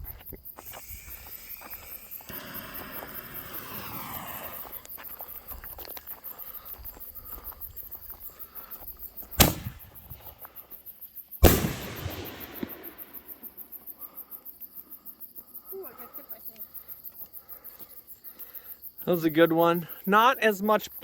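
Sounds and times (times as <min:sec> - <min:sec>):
firework shell bursting with rumble: 0:00.6 - 0:04.9, 0:09.3 - 0:10.3, 0:11.4 - 0:13.6
firework mortar launch report: 0:00.6 - 0:05.4, 0:09.3 - 0:10.4, 0:11.4 - 0:13.7.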